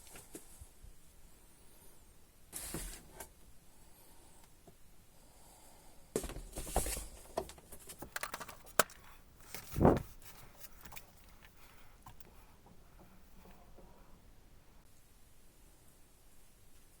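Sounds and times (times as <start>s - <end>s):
handling clicks and rustles: 6.2s - 13.8s.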